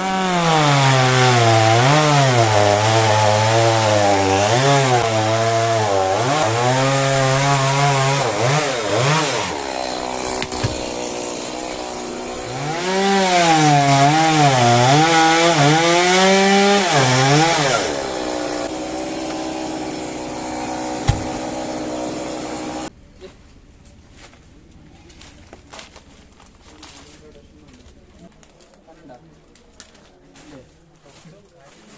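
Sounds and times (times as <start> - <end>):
chainsaw cutting wood: 0.0 - 22.9.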